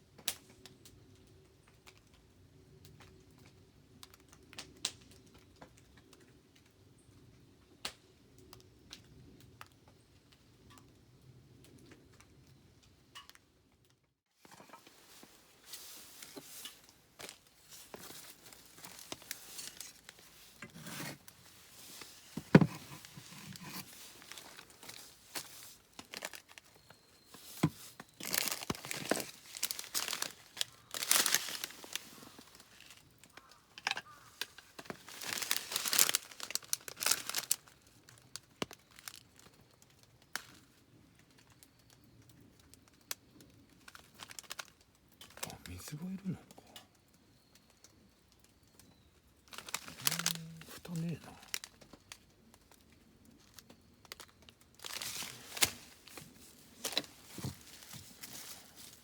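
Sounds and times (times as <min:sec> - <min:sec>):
crinkling and rustling: 0:14.4 - 0:41.6, 0:42.7 - 0:46.5, 0:49.4 - 0:59.0.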